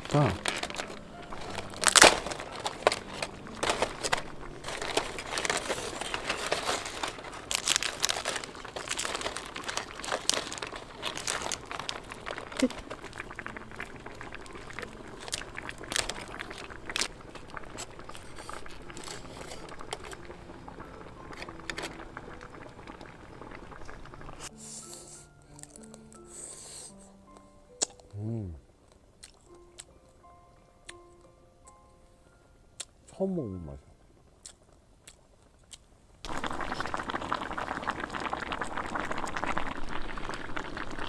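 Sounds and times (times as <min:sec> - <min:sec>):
crab shell cracking: 0:00.0 - 0:23.2, 0:27.3 - 0:28.1, 0:28.9 - 0:30.2, 0:34.4 - 0:38.8.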